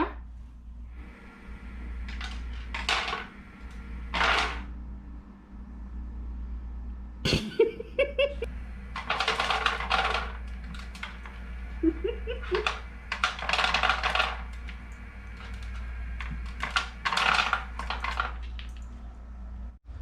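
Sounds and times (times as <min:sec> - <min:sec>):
kibble clattering into tray: 0:02.1 - 0:03.4, 0:04.1 - 0:04.7, 0:09.0 - 0:11.3, 0:12.4 - 0:14.8, 0:15.4 - 0:18.8.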